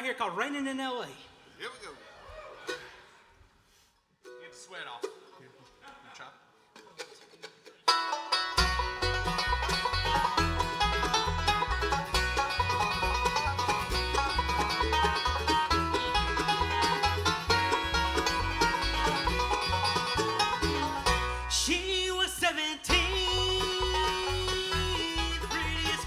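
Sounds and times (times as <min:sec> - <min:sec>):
mandolin: 0:02.7 - 0:03.2, 0:04.2 - 0:26.0
banjo rolls: 0:04.2 - 0:26.0
guitar: 0:06.8 - 0:26.0
bass pulsing: 0:08.6 - 0:26.0.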